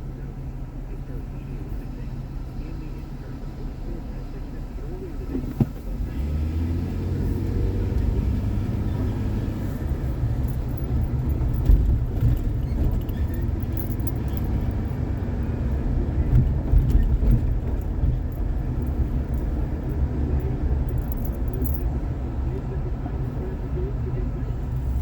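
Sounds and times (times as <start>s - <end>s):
car engine and tyre rumble: 0.0s - 25.0s
car bumps: 5.3s - 6.0s, 10.4s - 14.9s.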